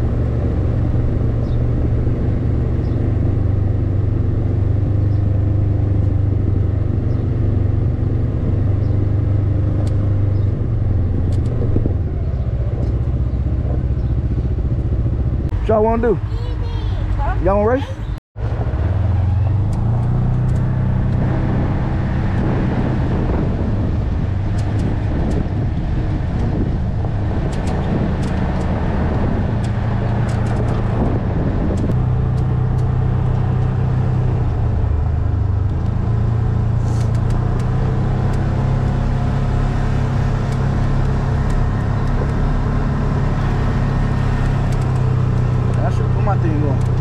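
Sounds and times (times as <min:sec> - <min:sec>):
off-road vehicle engine running: 0:00.0 - 0:47.0
road and wind noise: 0:00.0 - 0:47.0
light ticks: 0:09.8 - 0:10.0, 0:11.3 - 0:11.6, 0:19.7 - 0:21.2, 0:37.0 - 0:37.7.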